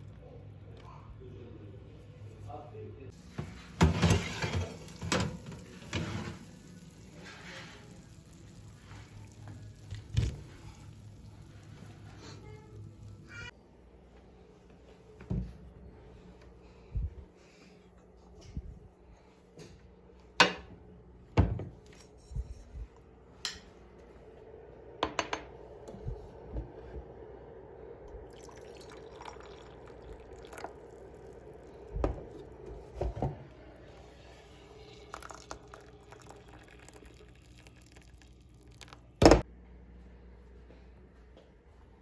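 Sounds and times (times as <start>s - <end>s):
faint liquid sounds: 4.4s - 13.5s, 27.9s - 39.3s.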